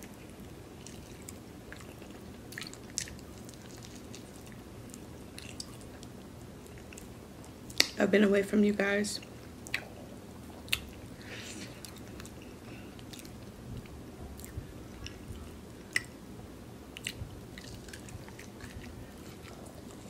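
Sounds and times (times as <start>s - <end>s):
person chewing food: 0.0s - 7.9s, 9.3s - 16.2s, 16.9s - 20.0s
wet mouth clicks and smacks: 9.6s - 9.9s, 15.9s - 16.2s, 17.0s - 19.5s.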